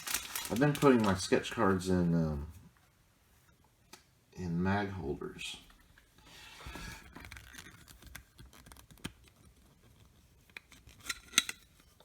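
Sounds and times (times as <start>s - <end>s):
soft card rustle: 0.0s - 2.9s, 5.6s - 12.0s.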